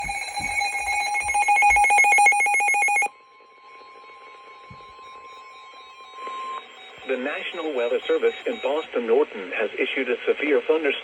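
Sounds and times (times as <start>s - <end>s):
rapid electronic trilling beep: 0.0s - 3.1s, 5.0s - 8.9s
faint steady warning tone: 0.0s - 10.1s.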